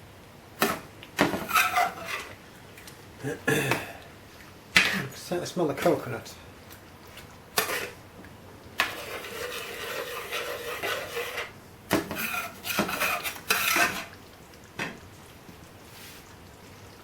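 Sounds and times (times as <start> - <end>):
utensil scraping a pan: 0.6 - 2.4, 7.6 - 8.0, 8.8 - 14.2.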